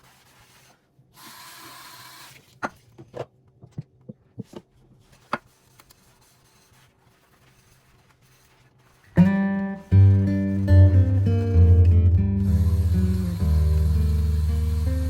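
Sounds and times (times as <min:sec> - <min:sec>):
faint rubbing: 0:04.8 - 0:11.8
acoustic guitar music: 0:09.2 - 0:15.0.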